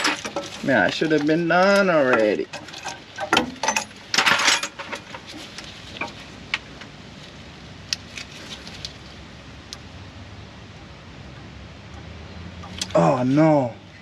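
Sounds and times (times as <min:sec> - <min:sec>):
metal tools clattering: 0:00.0 - 0:06.2.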